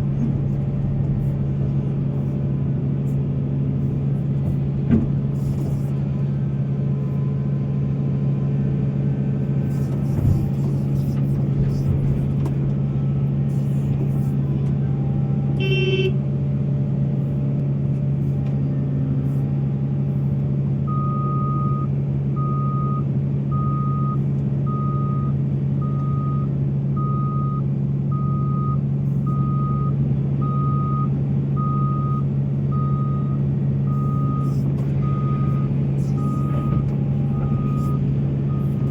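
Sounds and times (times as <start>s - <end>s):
diesel engine humming: 0.0s - 38.9s
horn blast: 15.6s - 16.2s
reversing alarm beeping: 20.9s - 38.9s.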